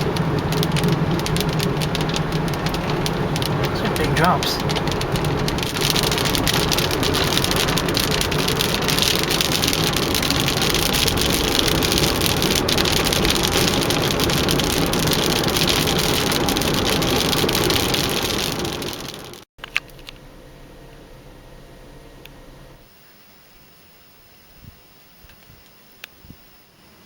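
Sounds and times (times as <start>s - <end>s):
heavy rain on a car roof: 0.0s - 20.2s.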